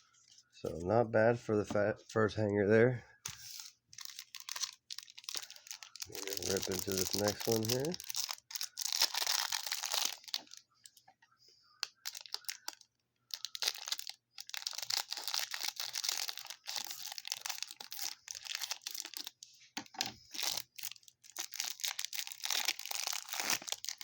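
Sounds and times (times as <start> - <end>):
cellophane and cardboard tearing: 3.4 - 10.6, 12.0 - 19.4, 20.3 - 24.0.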